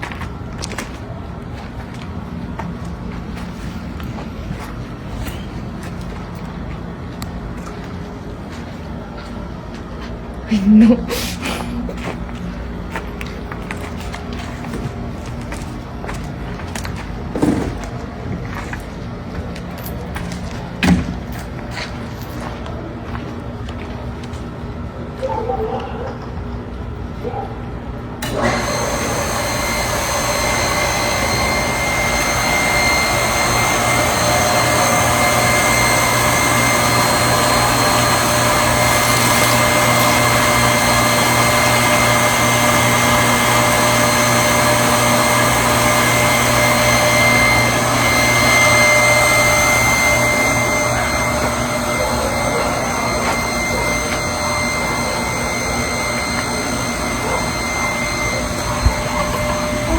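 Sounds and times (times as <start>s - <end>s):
whirring motor with high whine: 28.1s - 59.9s.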